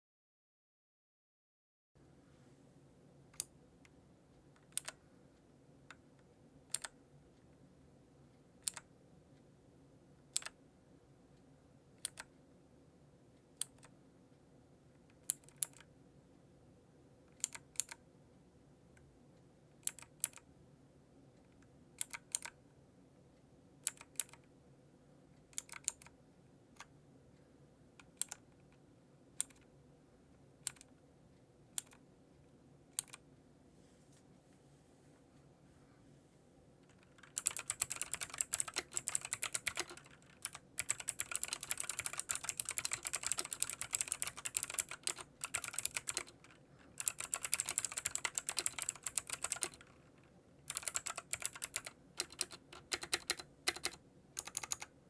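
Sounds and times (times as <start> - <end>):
faint hum: 2.0 - 55.0
mechanical keyboard key clicks: 4.7 - 5.0, 6.7 - 6.9, 8.6 - 8.8, 12.0 - 12.3, 15.3 - 15.9, 17.4 - 18.0, 19.8 - 20.4, 22.0 - 22.5, 23.8 - 24.4, 25.5 - 26.1, 28.0 - 28.4, 30.6 - 30.9, 31.8 - 32.0, 33.0 - 33.2, 36.9 - 50.0, 50.7 - 54.9.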